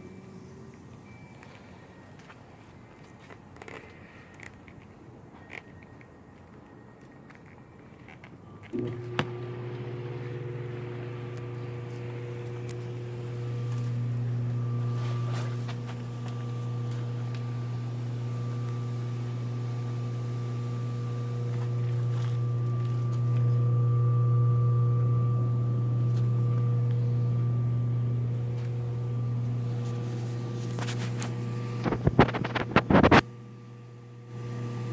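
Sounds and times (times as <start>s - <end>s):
pump motor humming: 8.6s - 34.9s.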